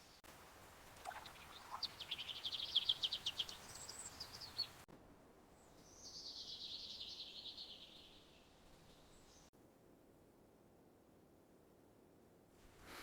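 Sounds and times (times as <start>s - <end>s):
songbirds trilling: 0.9s - 4.8s.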